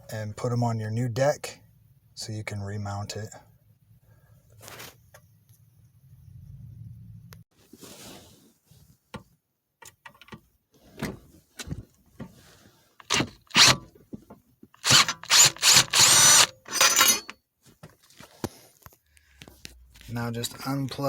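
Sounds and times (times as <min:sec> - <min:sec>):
screwdriver squeaking on screws: 0:13.0 - 0:13.8, 0:14.8 - 0:17.3
screwdriver clicks and knocks: 0:14.8 - 0:17.3.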